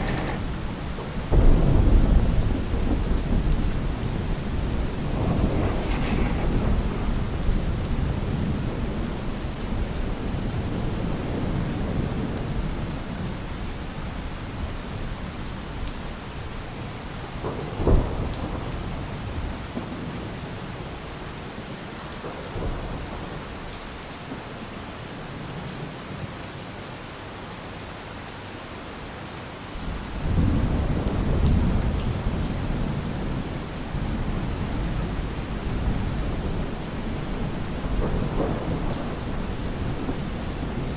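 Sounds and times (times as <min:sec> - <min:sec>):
steady rain falling: 0:00.0 - 0:40.9
thunder rumbling: 0:01.3 - 0:09.2.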